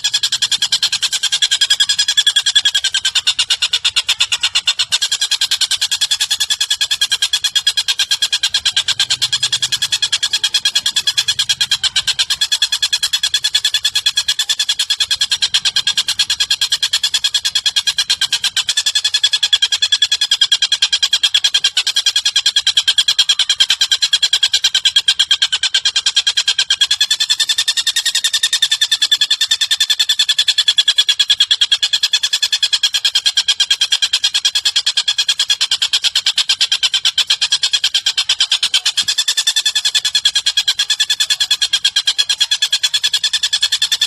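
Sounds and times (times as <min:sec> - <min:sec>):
bird trilling: 0:00.0 - 0:44.0.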